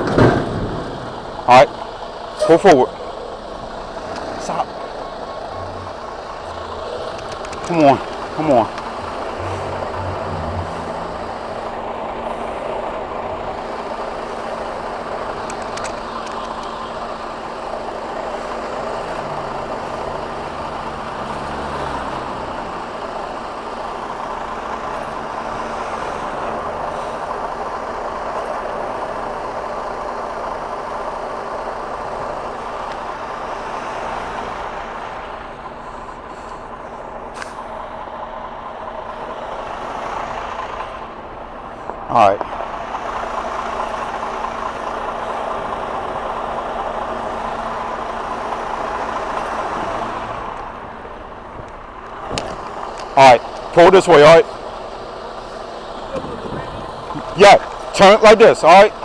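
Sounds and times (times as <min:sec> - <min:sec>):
truck diesel engine running: 0:00.0 - 0:59.0
sharp clicks: 0:06.5 - 0:09.2, 0:15.4 - 0:16.8.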